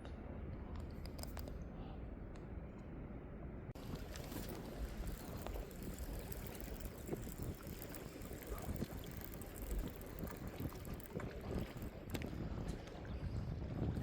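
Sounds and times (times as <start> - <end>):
wind rumbling on microphone: 3.7 - 14.0
sea water sloshing: 3.8 - 14.0
faint clicks: 4.0 - 12.3.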